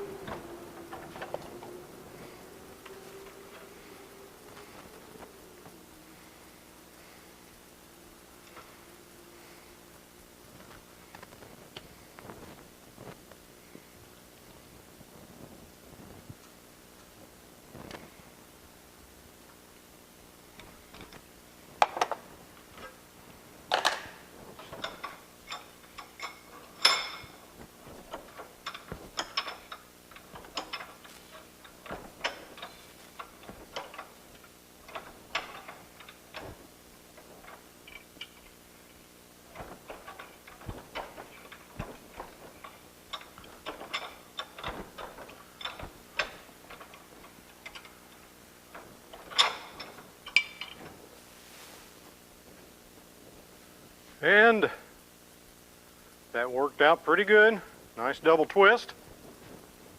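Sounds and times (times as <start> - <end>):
faint steady hum: 0.0 - 59.9
metal tools clanking on steel bar: 24.6 - 36.6, 48.7 - 50.8.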